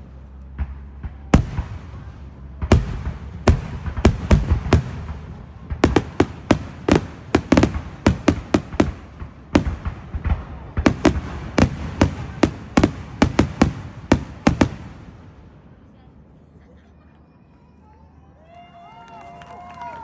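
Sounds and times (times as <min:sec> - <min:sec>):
echoing rumble: 0:00.0 - 0:15.8
fireworks bursting: 0:00.0 - 0:15.8.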